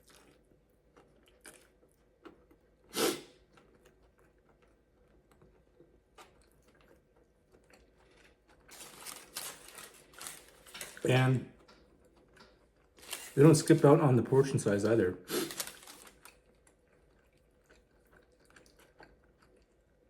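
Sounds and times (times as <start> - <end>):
person eating wrapped food: 0.0 - 14.0, 15.2 - 20.0
crisp crunching: 6.2 - 13.8, 15.3 - 19.6.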